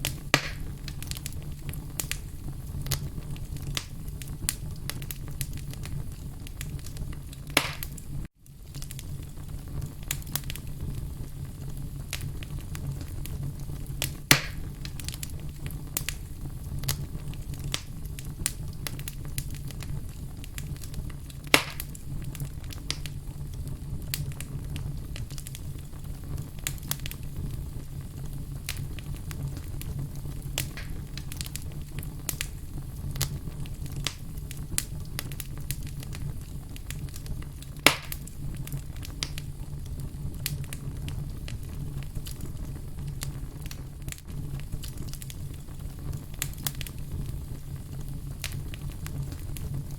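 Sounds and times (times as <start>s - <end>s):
fire flames rumbling: 0.0s - 49.9s
wood crackling: 0.0s - 49.9s
loud sharp wood pops: 0.3s - 0.7s, 7.6s - 8.0s, 14.3s - 14.6s, 21.5s - 21.9s, 37.9s - 38.2s.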